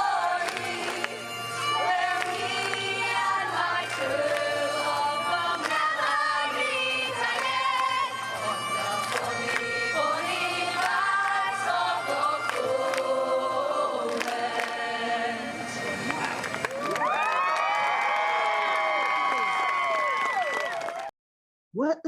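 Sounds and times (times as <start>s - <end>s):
group of people singing: 0.0s - 15.9s.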